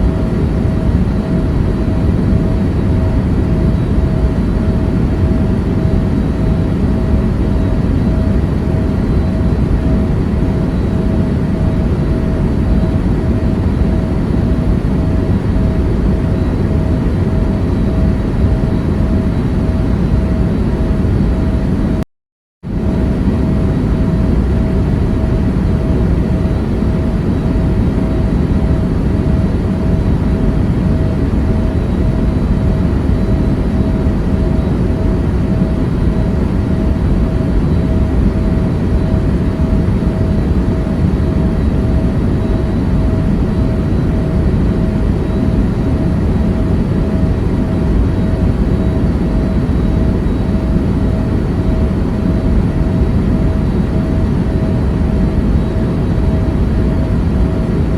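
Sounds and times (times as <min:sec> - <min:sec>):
faint steady hum: 0:22.7 - 0:57.9.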